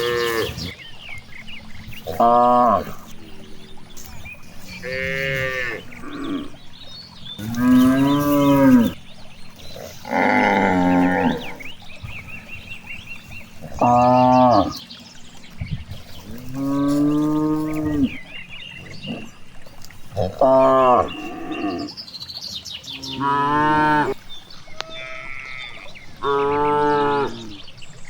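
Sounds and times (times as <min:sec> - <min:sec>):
cattle mooing: 0:00.0 - 0:00.8, 0:02.0 - 0:03.7, 0:04.5 - 0:06.6, 0:07.4 - 0:09.0, 0:09.7 - 0:11.7, 0:13.7 - 0:14.8, 0:16.2 - 0:18.3, 0:20.2 - 0:21.9, 0:23.0 - 0:27.7.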